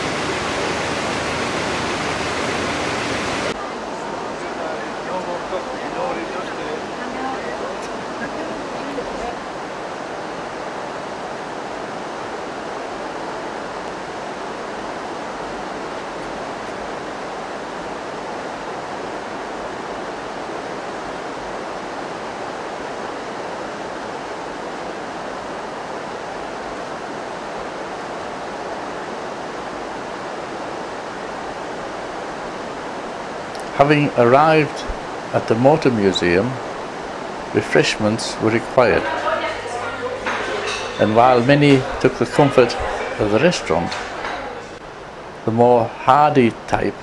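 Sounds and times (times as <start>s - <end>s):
steady rushing noise: 0.0s - 47.0s.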